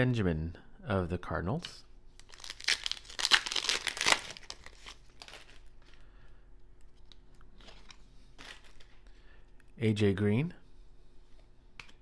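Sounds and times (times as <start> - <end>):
cards rustling: 2.2 - 6.0, 7.0 - 9.1
plastic wrapper crinkling and tearing: 2.2 - 6.0.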